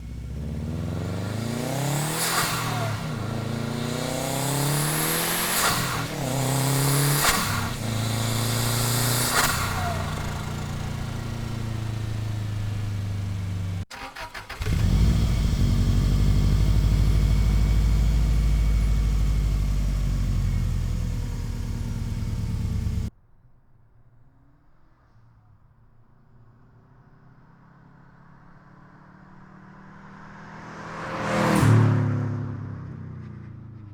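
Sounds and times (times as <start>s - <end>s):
car engine revving: 0.0s - 23.1s
turbo hissing burst: 1.9s - 12.9s.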